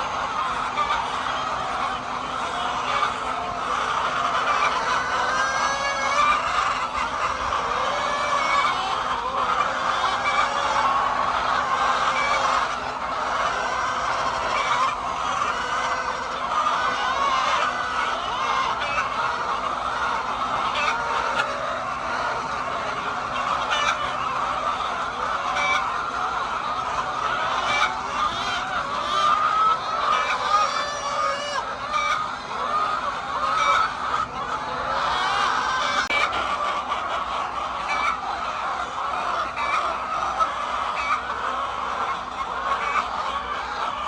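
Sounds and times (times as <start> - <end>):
hens clucking: 0.0 - 44.0.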